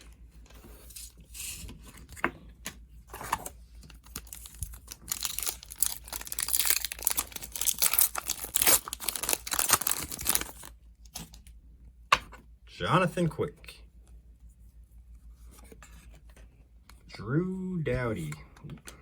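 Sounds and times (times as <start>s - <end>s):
cards being shuffled: 3.1s - 11.4s
wrapper crinkling: 3.8s - 10.7s.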